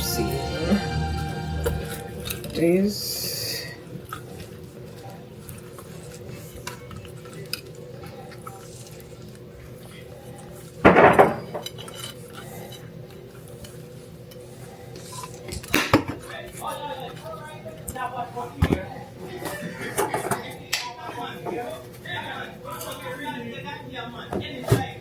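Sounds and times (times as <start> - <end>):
low steady hum: 0.0 - 19.9
dishes clattering: 10.8 - 12.8, 15.5 - 16.3, 18.6 - 21.8
dishes and utensils clinking: 10.8 - 12.9.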